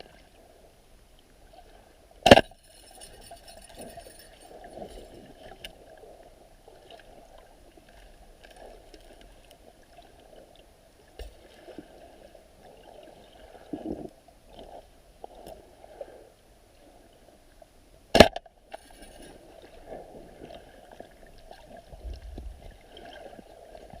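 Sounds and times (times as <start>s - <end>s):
muffled underwater water noise: 0.0s - 24.0s
sharp loud click: 2.2s - 2.6s, 18.1s - 18.5s.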